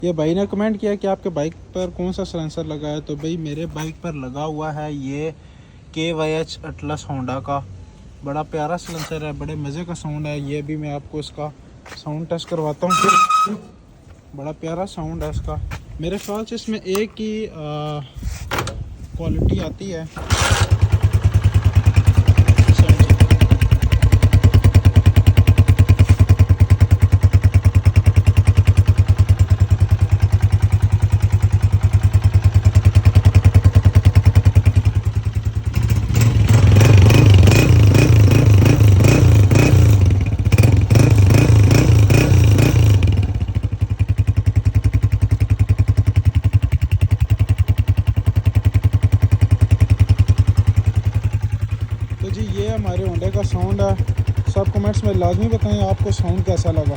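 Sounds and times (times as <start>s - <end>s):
motorcycle engine idling: 18.6s - 56.9s.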